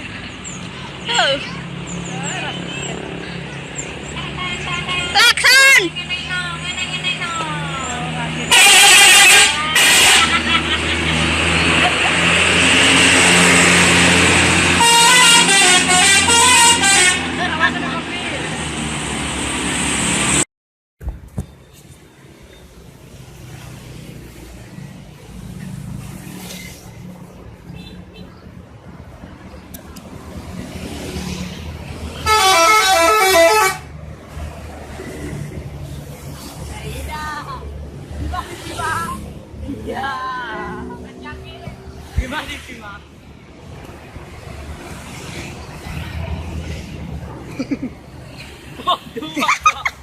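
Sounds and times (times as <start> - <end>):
bus musical horn melody: 8.5 - 10.4, 13.8 - 17.8, 32.2 - 33.9
loud rushing noise: 10.2 - 15.0, 17.2 - 20.4.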